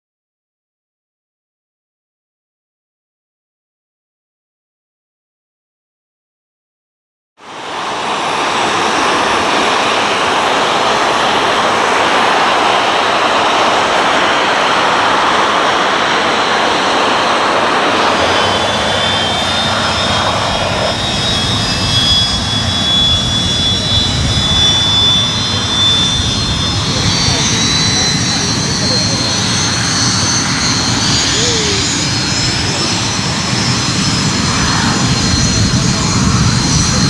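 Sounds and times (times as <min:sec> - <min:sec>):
high turbine whine: 0:07.4 - 0:37.0
jet engines roaring: 0:07.4 - 0:37.0
deep engine rumble: 0:17.6 - 0:37.0.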